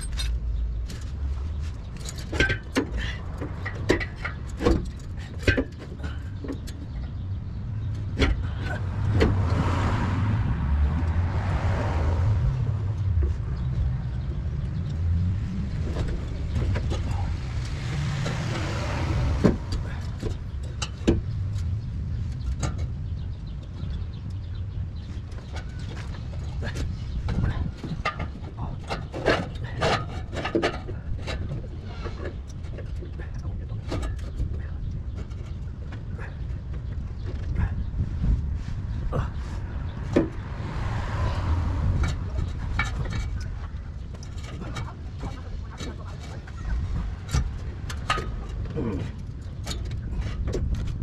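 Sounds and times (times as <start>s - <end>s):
steady low rumble: 0.0s - 51.0s
metal clanks on exhaust pipe: 1.9s - 9.6s, 25.4s - 37.7s, 40.0s - 51.0s.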